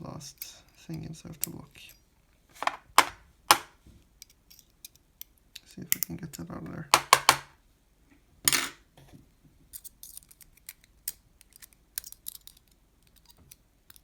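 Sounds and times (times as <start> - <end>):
metal clicks and scrapes in lock: 9.8 - 14.0.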